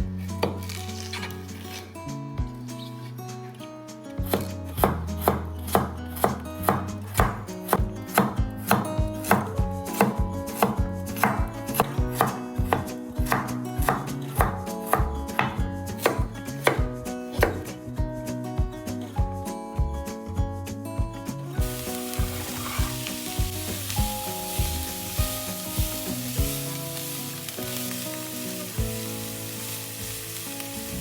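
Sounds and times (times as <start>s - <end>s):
knife chopping on cutting board: 4.3s - 17.7s, 22.1s - 23.7s.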